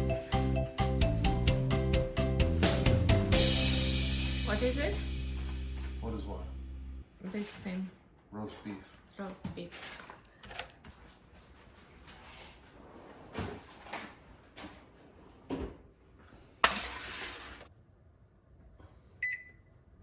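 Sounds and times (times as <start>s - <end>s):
scraping or rustling: 8.6s - 15.2s, 16.6s - 17.7s.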